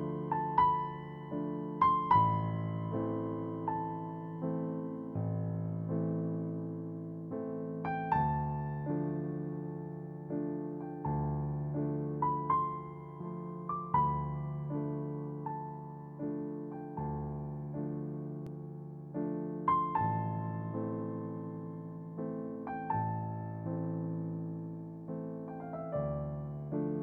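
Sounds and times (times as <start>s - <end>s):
electric piano chords: 0.0s - 27.0s.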